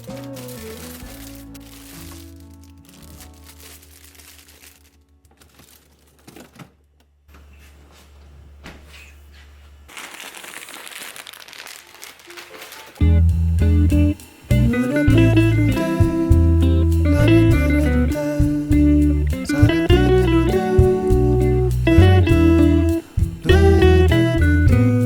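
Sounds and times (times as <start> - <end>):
quiet background music: 0.0 - 5.9
plastic bags crinkling: 0.0 - 6.8, 9.9 - 13.0
loud guitar music: 13.0 - 25.0.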